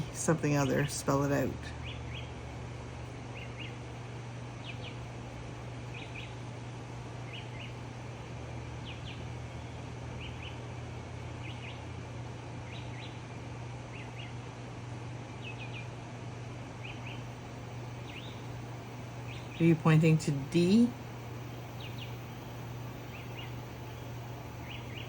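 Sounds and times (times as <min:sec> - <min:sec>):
low hum and hiss of room noise: 0:00.0 - 0:25.0
faint bird chirping: 0:03.3 - 0:05.1, 0:05.8 - 0:06.5, 0:07.2 - 0:08.0, 0:08.7 - 0:10.7, 0:11.4 - 0:11.9, 0:12.6 - 0:14.4, 0:15.3 - 0:25.0.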